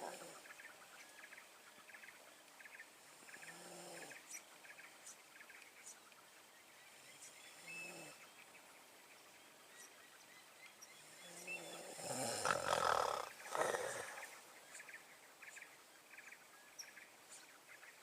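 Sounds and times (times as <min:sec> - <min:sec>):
loud low animal call: 0:12.0 - 0:14.4.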